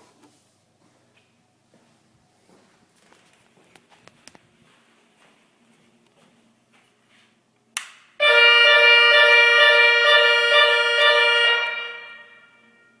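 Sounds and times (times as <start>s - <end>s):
fire alarm buzzing tone: 8.2s - 13.0s.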